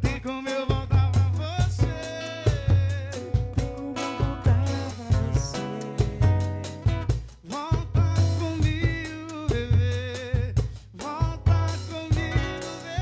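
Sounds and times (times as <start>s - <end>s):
drum kit beat: 0.0s - 13.0s
bending melodic lead line: 3.6s - 6.8s.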